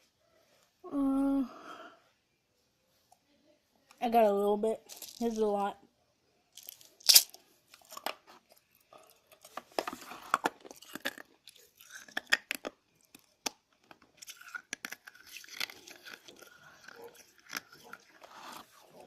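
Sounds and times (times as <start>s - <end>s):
chewing hard candy crunches: 6.6s - 8.0s, 9.0s - 19.0s.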